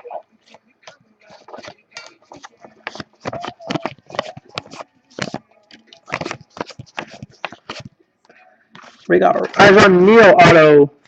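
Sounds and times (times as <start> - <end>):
cards sliding and flicking: 1.3 - 5.4, 6.0 - 7.9.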